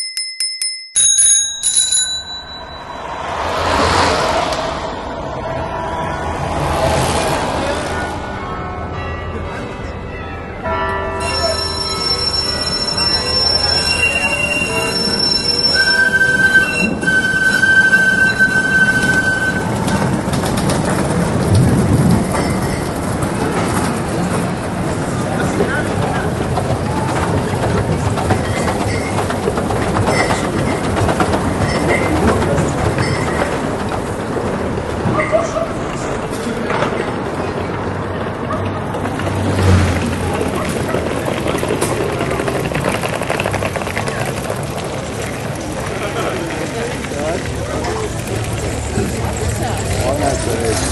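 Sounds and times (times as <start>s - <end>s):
running rail car noise: 0.0s - 50.9s
train rumbling on track: 1.6s - 50.9s
clattering wheels: 10.6s - 50.9s
rail wheels squealing: 11.2s - 21.1s, 28.3s - 33.9s.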